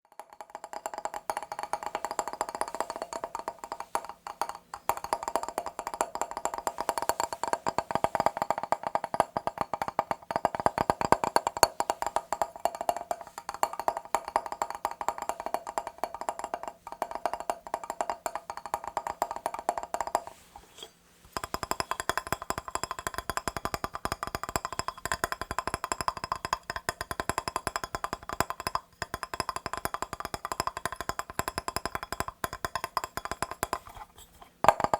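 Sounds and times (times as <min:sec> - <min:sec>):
fast tapping on a mirror: 0:00.1 - 0:20.4, 0:21.3 - 0:34.0, 0:34.6 - 0:34.9.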